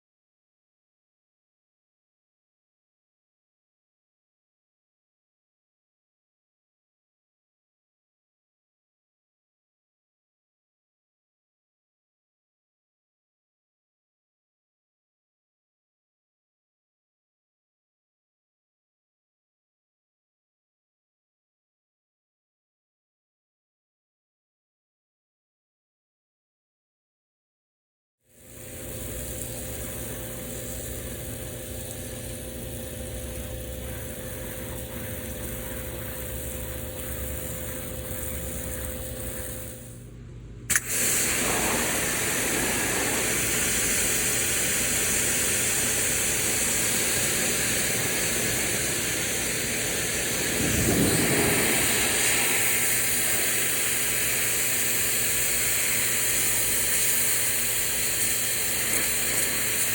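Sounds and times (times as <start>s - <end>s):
pressure washer hum: 28.3s - 59.9s
high-pressure water jet hissing: 28.4s - 39.9s, 40.7s - 59.9s.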